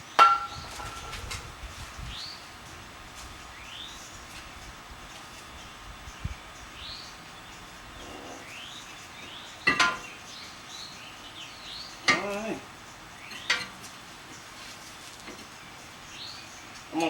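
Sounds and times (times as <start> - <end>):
birds chirping faintly: 0.0 - 17.0
metallic clanks with ringing: 0.1 - 1.4, 9.6 - 10.1.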